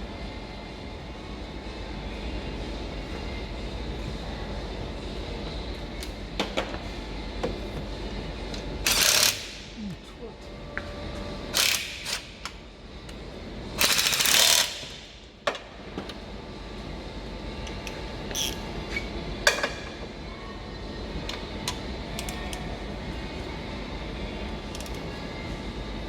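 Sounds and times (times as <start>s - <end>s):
rapid ratchet clicking: 8.8s - 9.6s, 11.5s - 12.3s, 13.8s - 14.9s.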